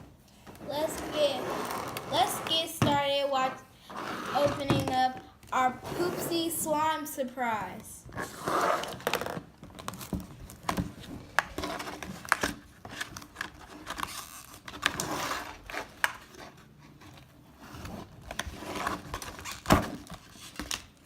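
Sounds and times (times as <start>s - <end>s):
box clicks and scrapes: 0.8s - 5.0s, 8.2s - 9.4s
wrappers crinkling and rustling: 8.1s - 17.3s, 18.0s - 21.0s.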